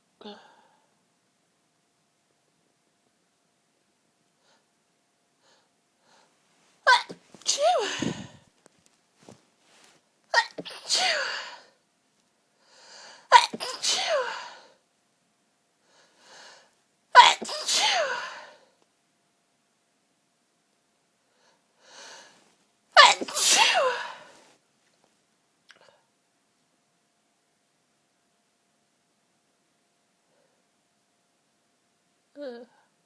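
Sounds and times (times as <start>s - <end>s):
woman sneezing: 6.9s - 8.4s, 10.4s - 11.7s, 13.3s - 14.7s, 17.2s - 18.6s, 23.0s - 24.5s
short in-breaths: 7.6s - 8.4s.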